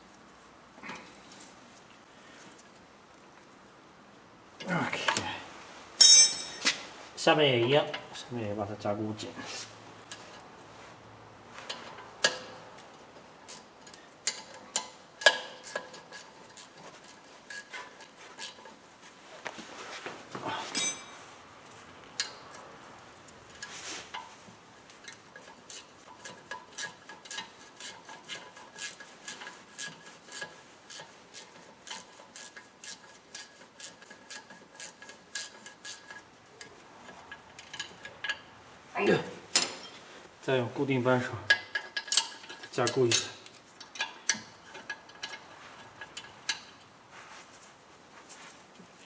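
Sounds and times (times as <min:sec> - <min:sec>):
wrench scraping on bolt: 0:06.0 - 0:06.7, 0:13.5 - 0:18.8, 0:24.9 - 0:38.5, 0:41.5 - 0:46.9.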